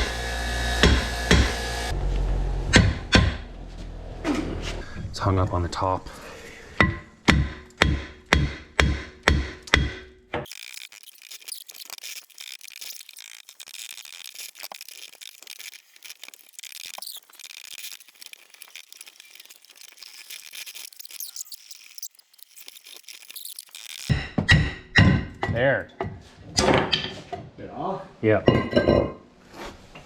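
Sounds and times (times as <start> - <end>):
metallic scraping: 10.4 - 24.9.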